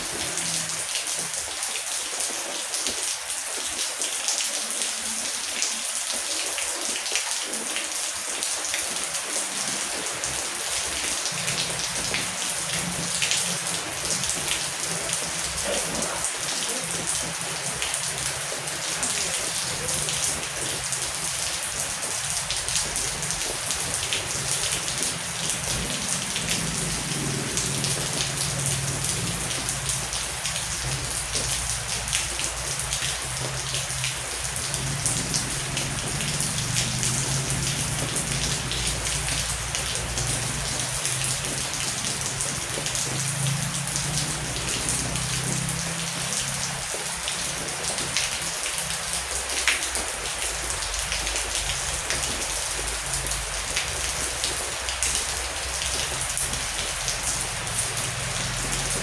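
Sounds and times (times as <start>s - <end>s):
heavy rain falling: 0.0s - 59.0s.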